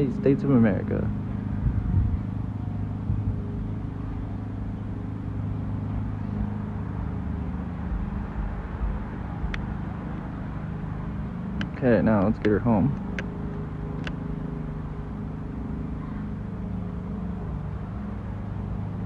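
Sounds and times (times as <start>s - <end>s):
wind buffeting microphone: 1.6s - 2.4s, 3.0s - 3.4s.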